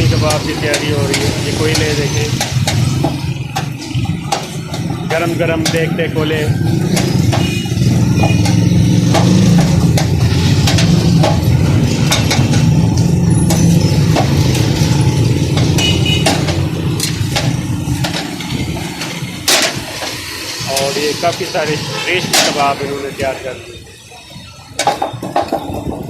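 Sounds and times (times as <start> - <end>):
sharp clicks and knocks: 0.0 - 22.8.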